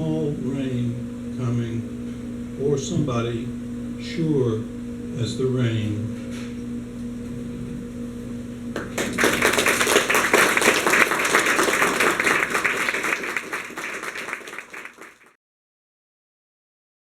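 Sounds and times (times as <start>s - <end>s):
audience applauding: 8.8s - 15.4s.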